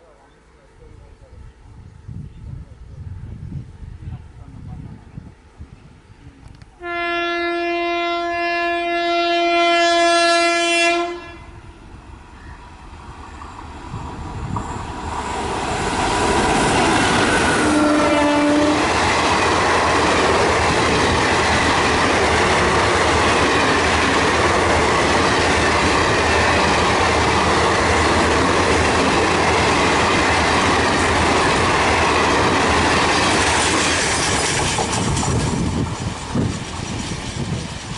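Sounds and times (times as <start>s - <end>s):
locomotive horn: 6.8s - 11.7s, 17.4s - 19.0s
train wheels clacking over rails: 14.3s - 37.9s.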